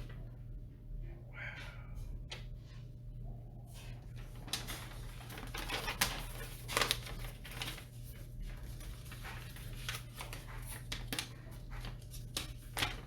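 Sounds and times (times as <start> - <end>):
low electrical hum: 0.0 - 13.0
packaging rustling and clicking: 4.3 - 13.0.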